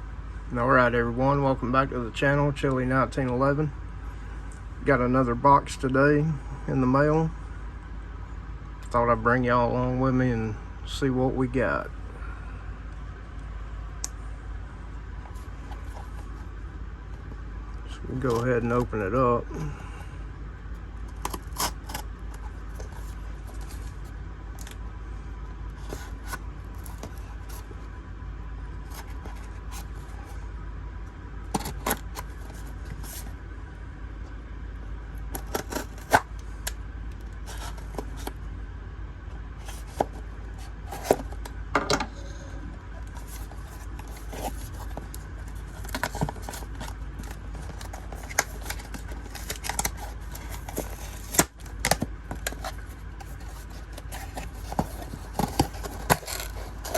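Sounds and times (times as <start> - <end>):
steady low hum: 0.0 - 56.9
cardboard box being opened: 15.3 - 16.5, 21.1 - 24.8, 25.7 - 27.8, 28.8 - 30.4, 31.5 - 33.3, 35.3 - 36.3, 37.4 - 38.4, 39.6 - 41.5, 43.0 - 56.9
tape and cardboard tearing: 21.1 - 23.9, 28.8 - 30.2, 31.5 - 33.2, 35.3 - 36.3, 37.4 - 38.3, 43.0 - 56.9.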